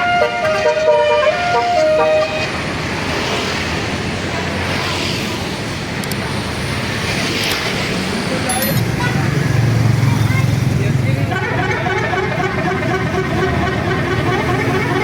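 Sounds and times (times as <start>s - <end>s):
bus horn playing a tune: 0.0s - 2.6s, 11.1s - 15.0s
passing bus and road traffic: 0.0s - 15.0s.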